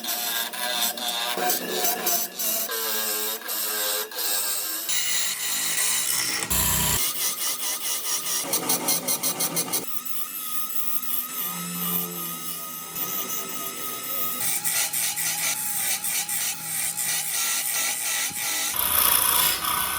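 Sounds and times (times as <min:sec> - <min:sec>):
rotary tool whine: 0:04.9 - 0:07.2
power tools working wood: 0:04.9 - 0:07.4, 0:11.5 - 0:19.9.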